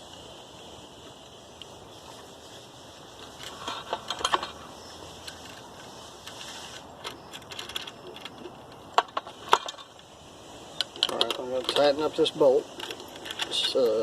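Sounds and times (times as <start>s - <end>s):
small metal parts clicking: 3.2s - 10.0s, 10.8s - 14.0s.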